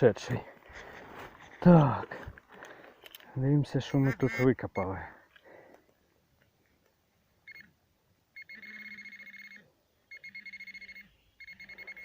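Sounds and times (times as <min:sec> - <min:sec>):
metal detector beeps: 0:07.4 - 0:07.7, 0:08.4 - 0:12.0.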